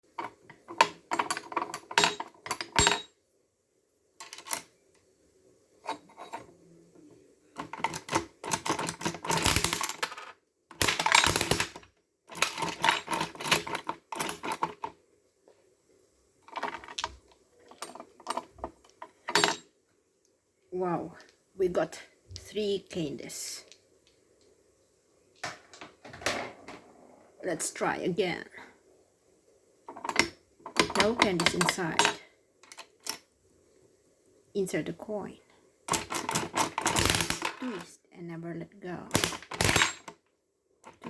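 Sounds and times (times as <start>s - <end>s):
gumball machine clicking and rattling: 35.9s - 37.8s, 39.1s - 40.2s.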